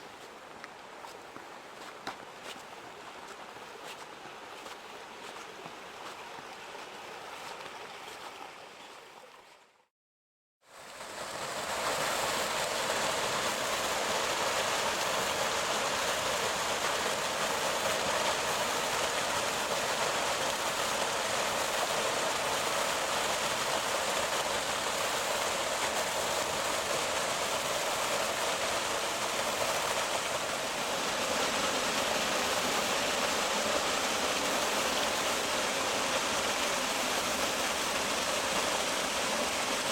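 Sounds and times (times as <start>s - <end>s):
waterfall rushing: 11.0s - 39.9s.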